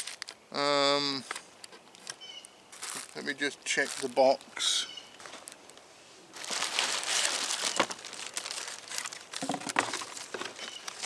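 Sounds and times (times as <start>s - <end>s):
packing material crinkling: 0.0s - 0.4s, 2.7s - 11.0s.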